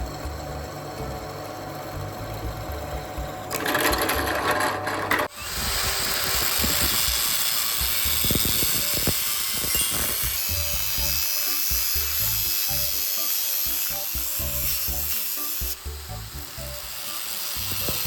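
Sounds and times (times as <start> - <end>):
power tool hissing: 5.3 - 18.0
background music with beat: 9.9 - 16.9.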